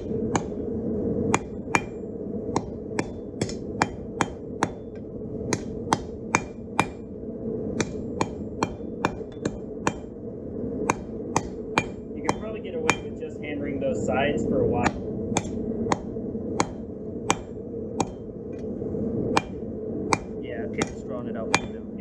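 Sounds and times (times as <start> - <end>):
hammer striking steel on anvil: 0.0 - 0.6, 1.3 - 7.1, 7.8 - 10.2, 10.8 - 13.2, 14.8 - 18.3, 19.3 - 22.0
steady low rush: 0.0 - 22.0.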